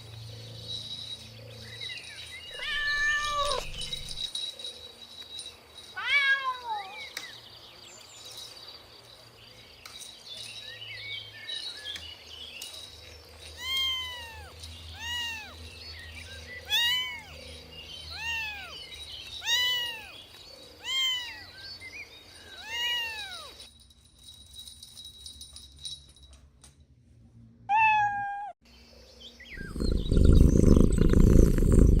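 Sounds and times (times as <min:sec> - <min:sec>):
kitten meowing: 0:02.6 - 0:04.0, 0:13.6 - 0:15.6, 0:16.7 - 0:17.4, 0:19.4 - 0:20.2, 0:20.8 - 0:21.5, 0:22.6 - 0:23.6.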